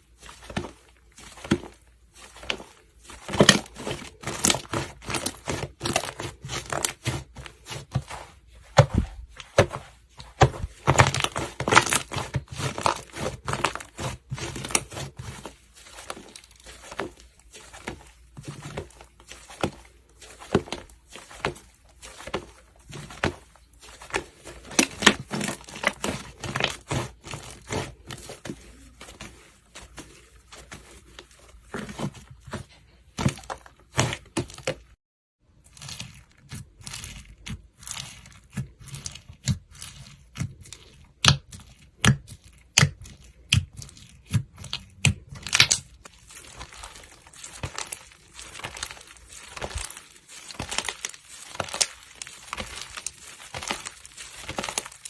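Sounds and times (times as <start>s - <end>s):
slime squished crackling and popping: 2.4s - 29.4s, 35.7s - 55.0s.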